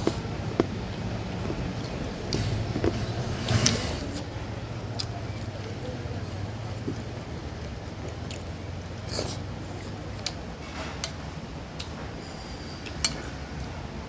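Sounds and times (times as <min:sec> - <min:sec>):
steady low hum: 0:00.0 - 0:09.8
chewing and slurping: 0:00.0 - 0:10.4.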